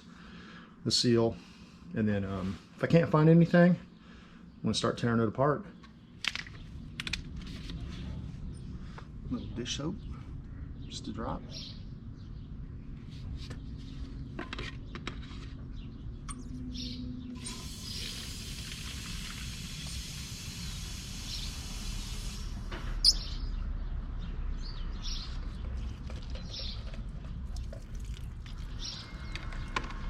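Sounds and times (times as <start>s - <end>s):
birds chirping: 7.7s - 18.3s, 22.7s - 27.8s, 28.5s - 30.0s
water running into spray bottle: 17.4s - 22.6s.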